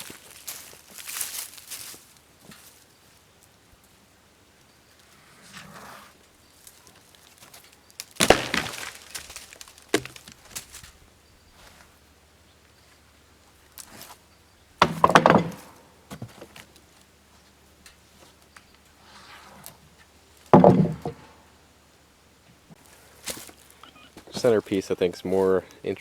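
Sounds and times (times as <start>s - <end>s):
wooden slabs knocking together: 8.0s - 10.8s, 14.8s - 16.7s, 20.5s - 21.4s.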